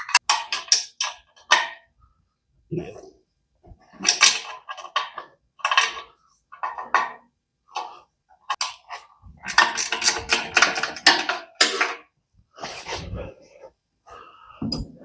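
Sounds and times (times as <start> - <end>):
metal tools clanking on bolts: 9.5 - 11.1, 14.6 - 15.0.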